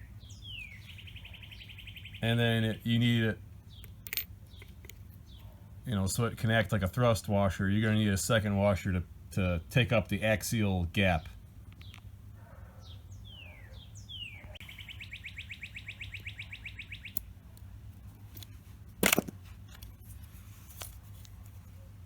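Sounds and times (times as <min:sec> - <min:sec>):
bird chirping and trilling: 0:00.0 - 0:02.9, 0:12.8 - 0:17.3
steady low hum: 0:00.0 - 0:22.0.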